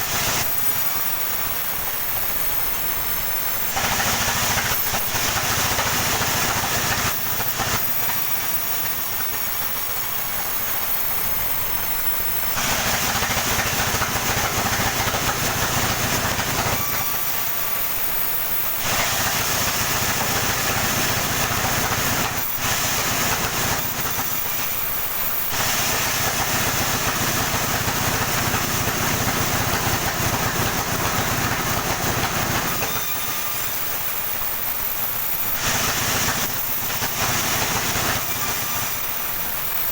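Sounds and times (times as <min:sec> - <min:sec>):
saw cutting through log: 0:00.0 - 0:39.9
machine hum: 0:12.2 - 0:34.7.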